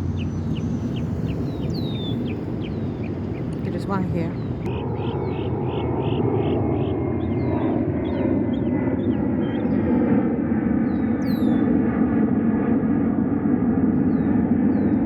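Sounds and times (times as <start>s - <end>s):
bird calls: 0.0s - 10.1s, 10.8s - 11.7s
steady low rumble: 0.0s - 15.0s.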